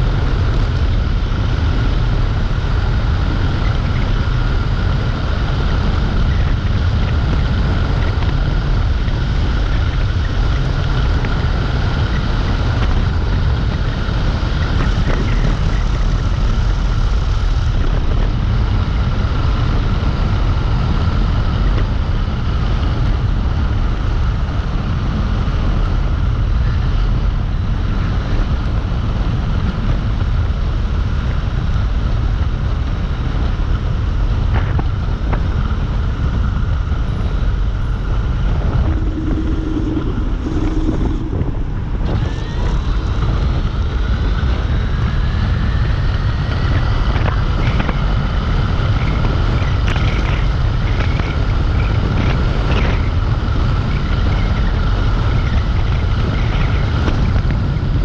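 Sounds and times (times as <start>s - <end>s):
wind buffeting microphone: 0.0s - 58.0s
faint high whine: 36.8s - 44.5s.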